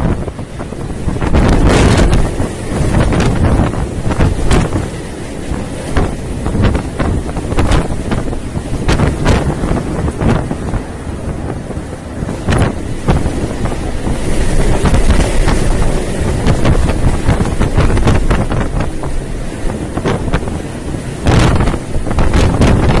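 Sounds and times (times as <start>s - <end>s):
steady low rumble: 0.0s - 23.0s
wind buffeting microphone: 0.0s - 23.0s.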